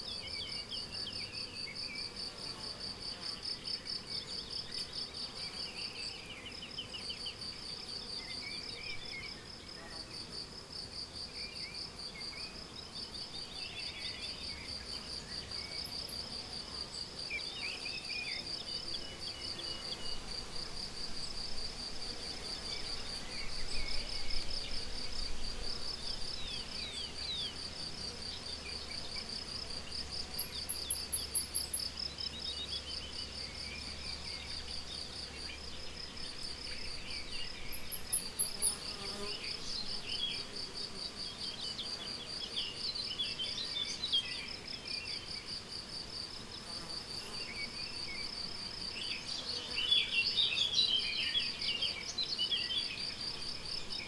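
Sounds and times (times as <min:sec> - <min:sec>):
bird calls and song: 0:11.3 - 0:16.2, 0:47.3 - 0:54.0
crickets chirping: 0:18.3 - 0:54.0.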